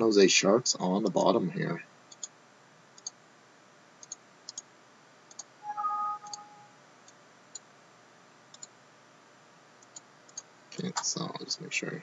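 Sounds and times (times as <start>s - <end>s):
computer mouse clicks: 2.1s - 2.4s, 3.0s - 3.2s, 4.0s - 4.7s, 5.3s - 5.5s, 6.2s - 7.7s, 8.5s - 8.7s, 9.8s - 11.1s
brief pitched tone: 5.6s - 6.8s.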